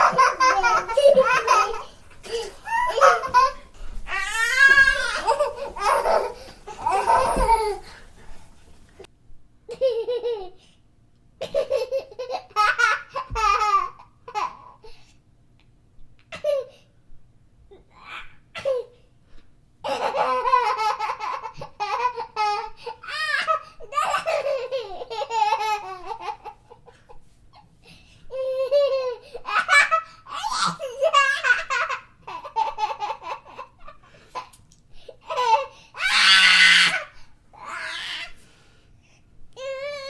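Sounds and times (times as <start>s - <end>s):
babies laughing: 0.0s - 8.0s, 19.9s - 27.2s, 28.3s - 34.6s.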